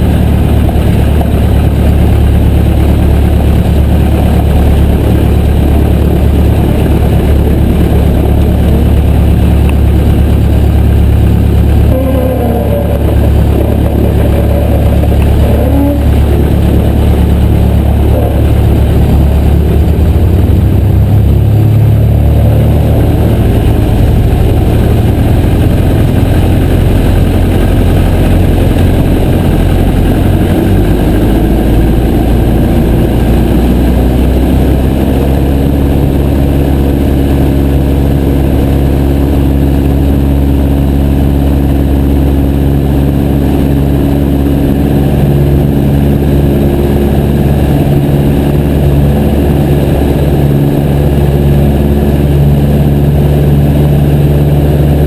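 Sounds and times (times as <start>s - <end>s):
light aircraft engine and propeller: 0.0s - 55.0s.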